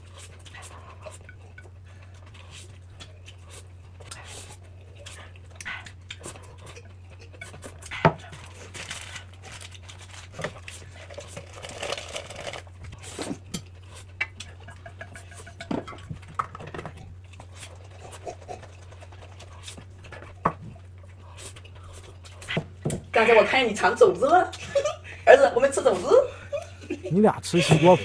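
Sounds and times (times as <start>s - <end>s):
steady low hum: 0.0s - 28.0s
rustling and crinkling from handling: 8.4s - 13.4s.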